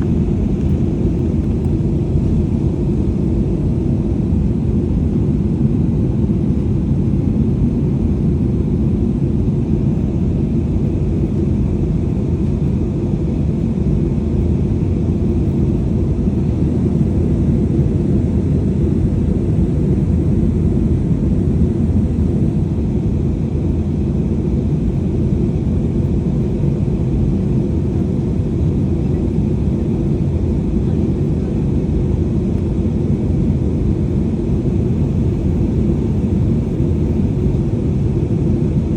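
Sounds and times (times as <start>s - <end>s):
airliner cabin engine rumble: 0.0s - 38.9s.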